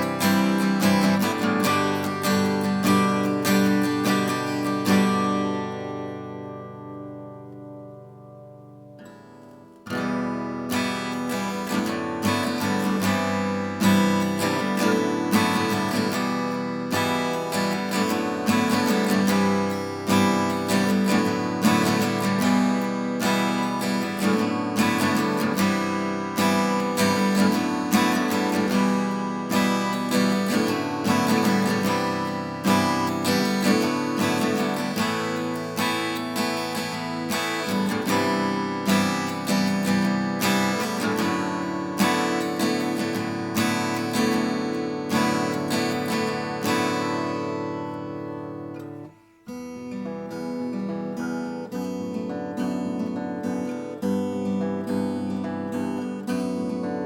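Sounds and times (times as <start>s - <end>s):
acoustic guitar strummed and picked: 0.0s - 57.0s.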